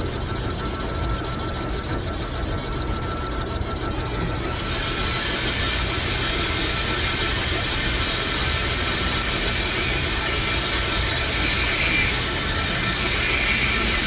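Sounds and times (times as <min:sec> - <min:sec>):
metal lathe drone: 0:04.4 - 0:14.0.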